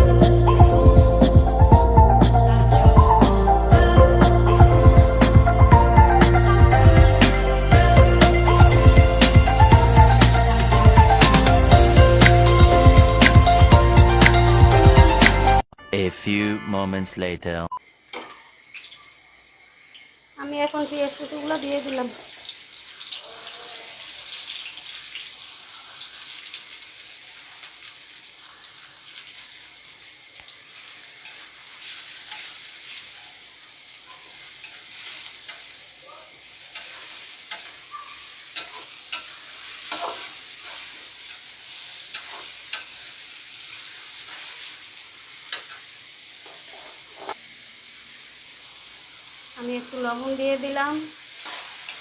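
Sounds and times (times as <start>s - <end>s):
onions sizzling in a pan: 7.7s - 15.4s, 17.9s - 52.0s
spoon clicking against pan: 36.7s - 37.8s, 38.6s - 39.3s, 42.1s - 43.0s.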